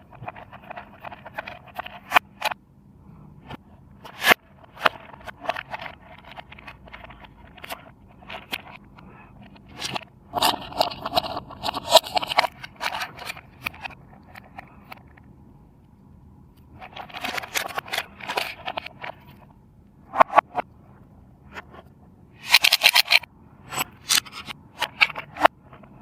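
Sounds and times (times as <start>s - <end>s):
toy clicks and scrapes: 0.0s - 2.6s, 4.0s - 15.1s, 16.8s - 19.5s, 22.4s - 26.0s.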